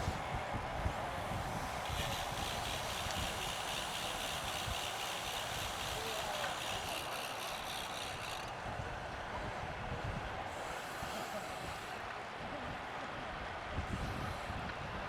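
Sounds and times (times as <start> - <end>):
wind rumbling on microphone: 0.0 - 3.6
bicycle freehub clicking: 1.4 - 8.5.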